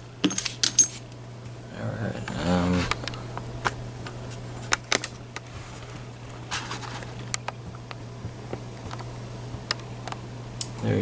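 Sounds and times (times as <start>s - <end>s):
steady low hum: 0.0s - 11.0s
small metal parts clicking: 0.2s - 1.0s.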